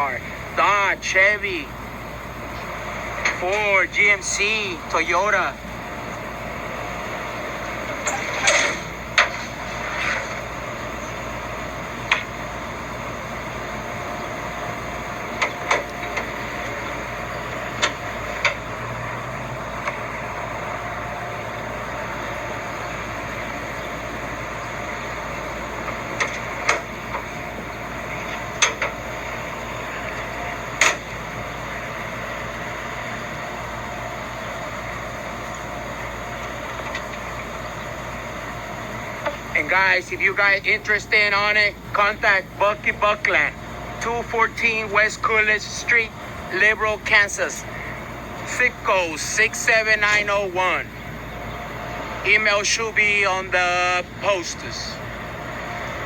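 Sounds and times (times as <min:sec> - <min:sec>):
steady background noise: 0:00.0 - 0:56.0.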